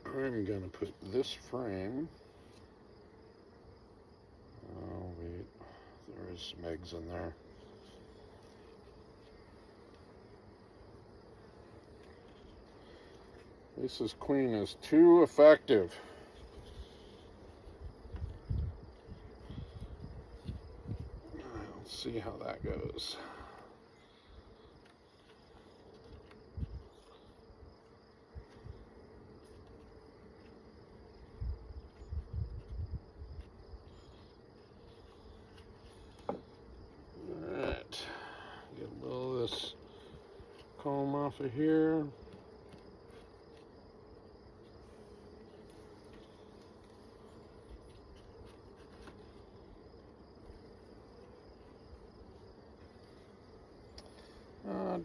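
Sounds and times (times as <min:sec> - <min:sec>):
honeybees humming: 0:00.0 - 0:55.0
bees buzzing: 0:05.4 - 0:32.3.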